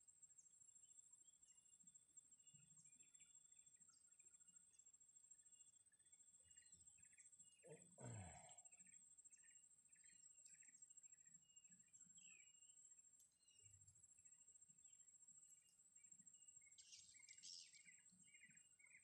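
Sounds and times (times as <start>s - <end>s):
bird chirping: 0.0s - 19.0s.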